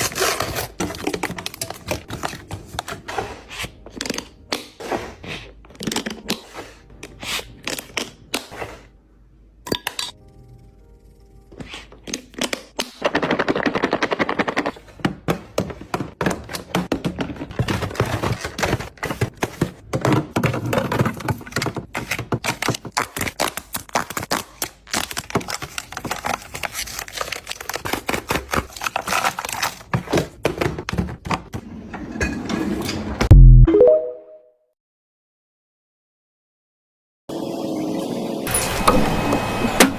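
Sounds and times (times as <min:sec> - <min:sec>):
packaging rustling: 0:20.7 - 0:30.4.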